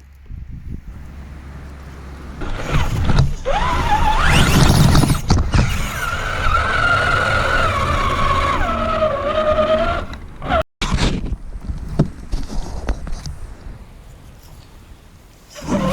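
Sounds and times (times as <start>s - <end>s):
electric motor whining: 1.0s - 10.6s, 15.6s - 15.9s.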